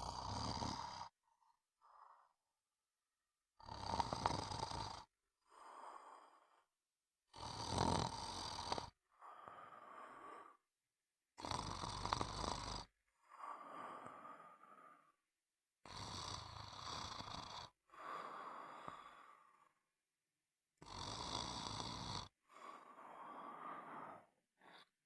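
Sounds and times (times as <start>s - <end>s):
loud snoring: 0.0s - 1.2s, 3.6s - 6.5s, 7.3s - 10.6s, 11.4s - 15.0s, 15.8s - 19.7s, 20.8s - 24.9s
quiet breath: 0.6s - 2.6s, 5.4s - 6.8s, 9.1s - 10.7s, 13.2s - 15.2s, 17.9s - 20.0s, 22.2s - 25.0s.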